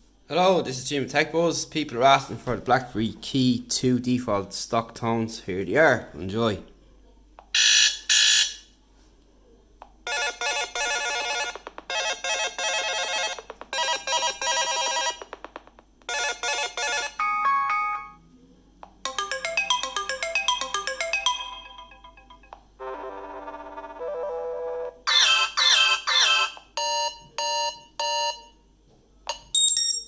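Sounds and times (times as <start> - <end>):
phone ringtone bright notes: 19.0 - 28.5, 29.3 - 30.0
melodic run of notes: 19.1 - 25.0
phone chime: 29.3 - 30.0.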